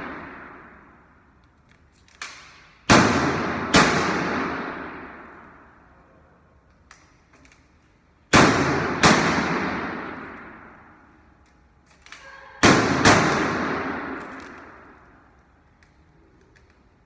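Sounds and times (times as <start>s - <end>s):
loud bangs with long ring: 0.0s - 0.9s, 2.9s - 5.4s, 8.4s - 11.0s, 12.4s - 14.9s.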